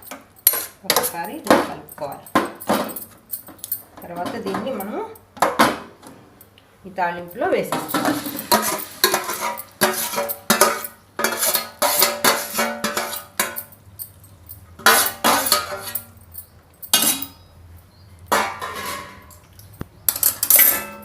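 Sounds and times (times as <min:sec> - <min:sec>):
metal spoon scraping steel cookware: 0:00.4 - 0:01.3, 0:07.7 - 0:13.7, 0:14.8 - 0:16.2, 0:16.9 - 0:17.4, 0:18.4 - 0:19.4.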